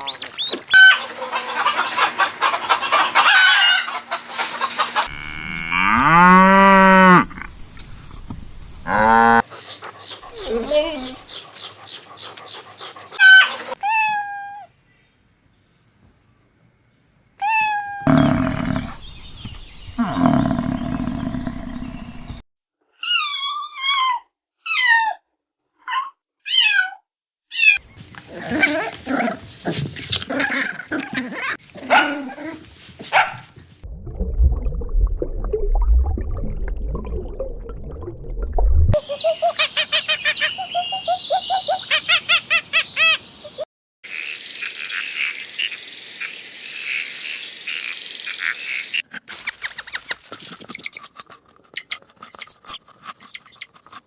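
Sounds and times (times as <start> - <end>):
cat meows: 13.8 - 14.7, 17.4 - 18.1
loud low animal call: 18.0 - 19.2, 19.9 - 22.4
low rumbling: 33.8 - 39.0.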